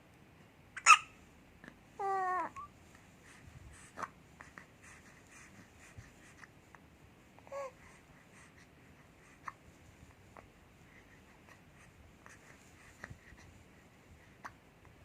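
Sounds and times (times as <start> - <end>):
squeaky hiccups: 0.8 - 1.2.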